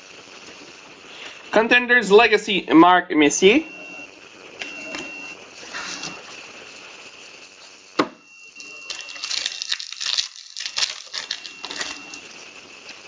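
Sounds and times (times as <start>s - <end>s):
foil wrapper crinkling and tearing: 8.8s - 12.3s.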